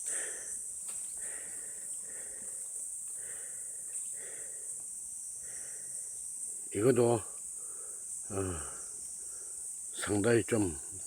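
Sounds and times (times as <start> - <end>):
person breathing hard: 0.0 - 4.8, 5.4 - 6.1, 7.6 - 9.6
high-pitched insect chorus: 0.0 - 11.0.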